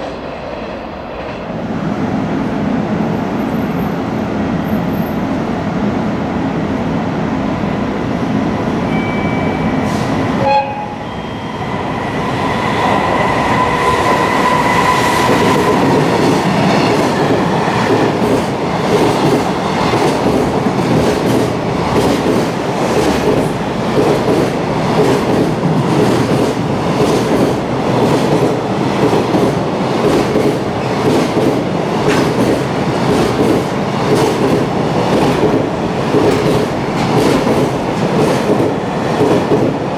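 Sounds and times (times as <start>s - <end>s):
locomotive high tone: 8.9s - 15.3s.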